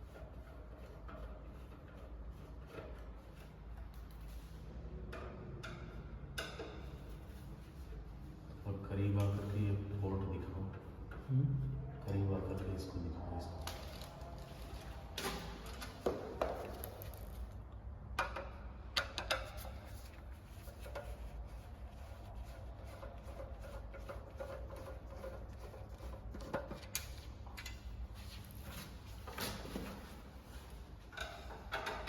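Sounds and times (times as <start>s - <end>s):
hardware clicks and knocks: 18.1s - 19.9s, 31.1s - 32.0s.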